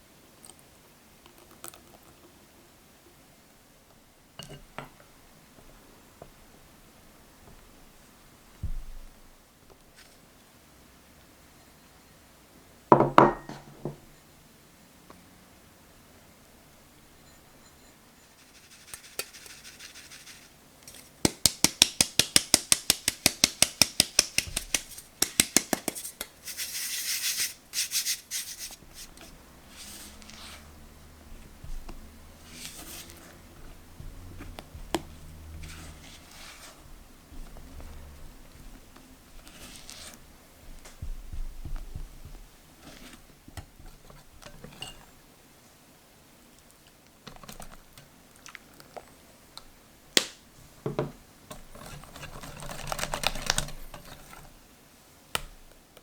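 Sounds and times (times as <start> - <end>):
scraping rustle: 18.3 - 21.2, 25.9 - 41.1, 41.9 - 45.1
soft dull taps: 31.3 - 32.4, 40.6 - 42.5.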